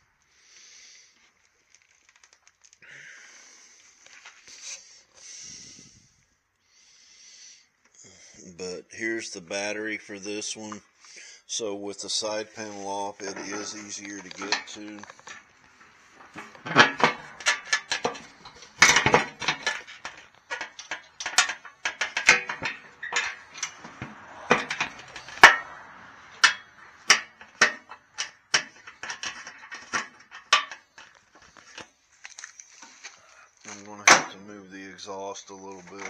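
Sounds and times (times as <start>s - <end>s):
light metal rattling: 12.0s - 31.9s
metal tools clinking and clanking: 12.2s - 34.4s.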